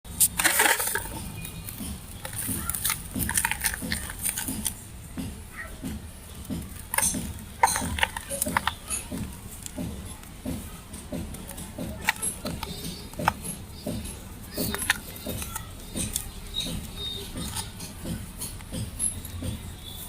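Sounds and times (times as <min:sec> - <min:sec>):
sand-cement crumbling and crunching: 0:00.1 - 0:04.8.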